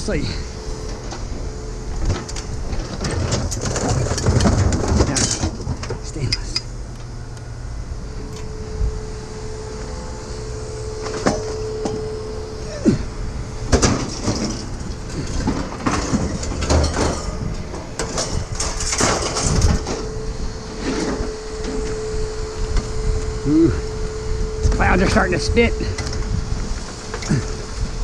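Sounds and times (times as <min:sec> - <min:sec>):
steady hum: 0:00.0 - 0:28.0
scrap metal clanking and scraping: 0:00.4 - 0:06.8, 0:11.0 - 0:22.0.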